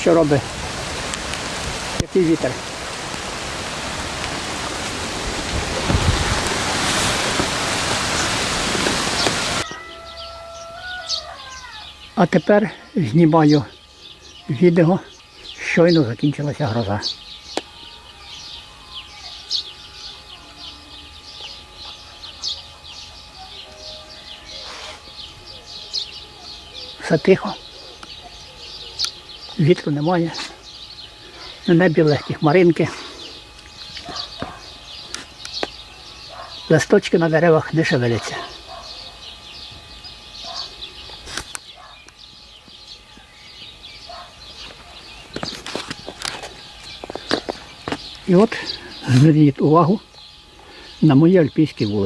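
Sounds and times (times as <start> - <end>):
songbirds chirping: 0.0 - 52.0
deeper bird call: 9.0 - 16.0.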